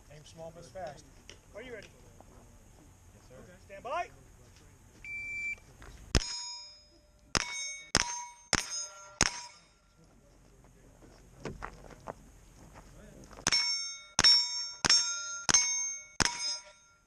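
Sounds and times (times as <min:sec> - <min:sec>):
gunshots ringing steel plates: 0:06.1 - 0:09.9, 0:13.4 - 0:17.0.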